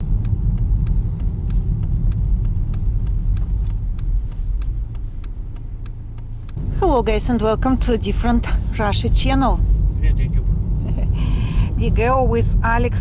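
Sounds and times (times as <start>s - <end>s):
sharp ticking: 0.0s - 10.0s
car engine and tyres rumbling: 0.0s - 13.0s.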